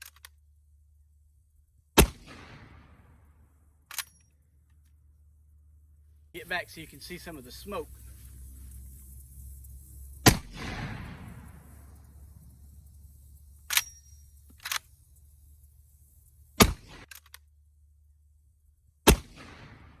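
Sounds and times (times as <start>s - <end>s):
loud shotgun shots: 2.0s - 3.2s, 10.2s - 11.9s, 16.6s - 17.1s, 19.1s - 20.0s.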